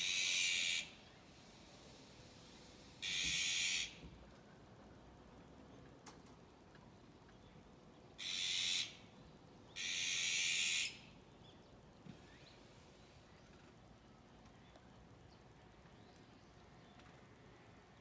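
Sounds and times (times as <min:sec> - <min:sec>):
magpie harsh raspy calls: 0:00.0 - 0:01.0, 0:03.0 - 0:04.0, 0:08.2 - 0:09.1, 0:09.8 - 0:11.1.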